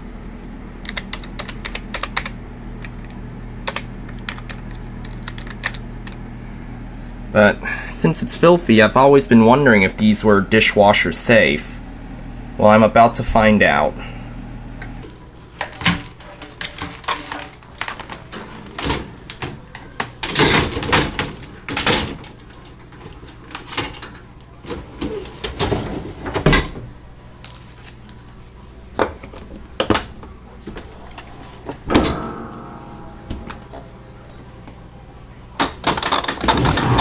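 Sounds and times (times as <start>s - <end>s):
dishwasher door and racks moving: 30.7s - 34.5s.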